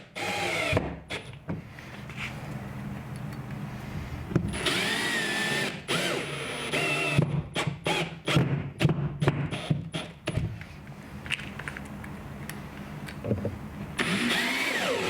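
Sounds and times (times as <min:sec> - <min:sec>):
cordless drill whining: 0:00.1 - 0:00.8, 0:04.5 - 0:08.2, 0:14.0 - 0:15.0.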